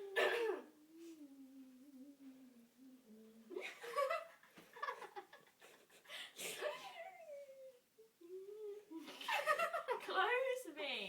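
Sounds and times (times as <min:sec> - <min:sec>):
girl giggling: 0:03.4 - 0:10.1.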